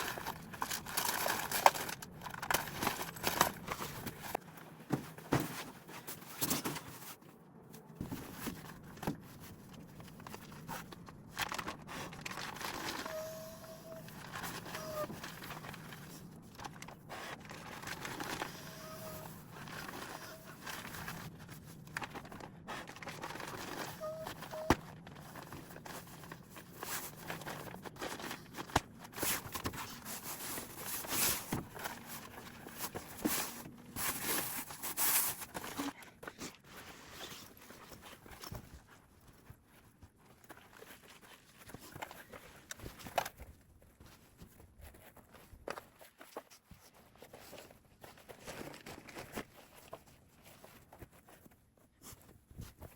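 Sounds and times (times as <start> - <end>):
close-up rustling and crinkling: 0.0 - 52.9
faint squeaks: 12.8 - 15.4, 18.4 - 21.1, 23.8 - 24.8.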